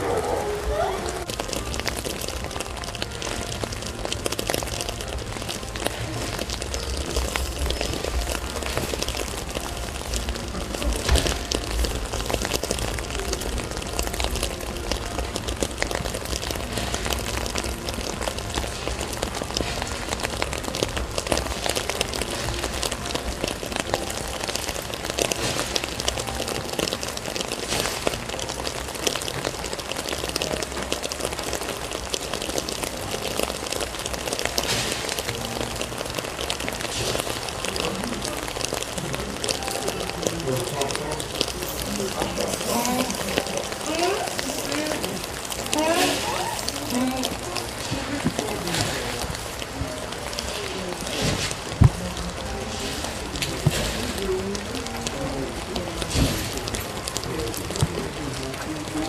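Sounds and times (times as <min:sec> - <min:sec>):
raindrops hitting close by: 0:00.0 - 0:59.0
steady rain falling: 0:00.0 - 0:59.0.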